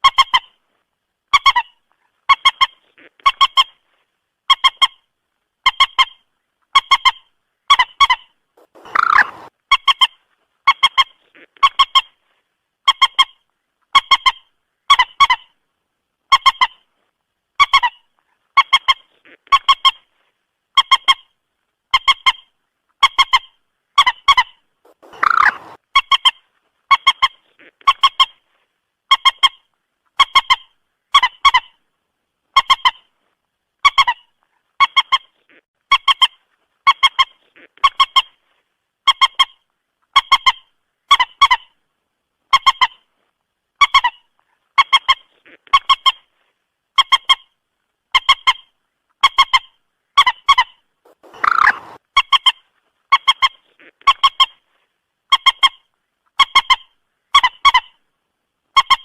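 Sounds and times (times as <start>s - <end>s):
moorhen clucking calls: 6.8s - 12.2s, 23.0s - 28.4s, 48.2s - 54.6s
moorhen harsh call: 8.6s - 9.5s, 24.9s - 25.8s, 51.1s - 52.0s.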